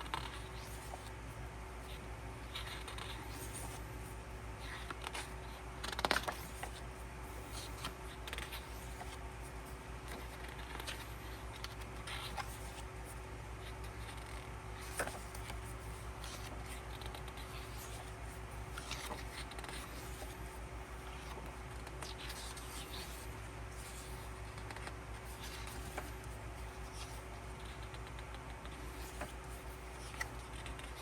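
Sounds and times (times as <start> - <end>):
photo book pages turning: 0.0 - 31.0
steady low hum: 0.0 - 31.0.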